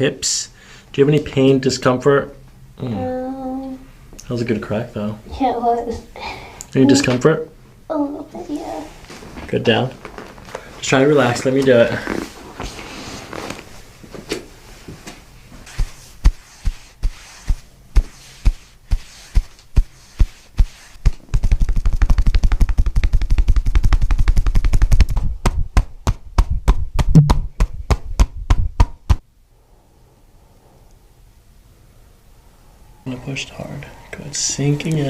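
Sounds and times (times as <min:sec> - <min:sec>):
percussive strikes on a body: 0:21.0 - 0:29.2.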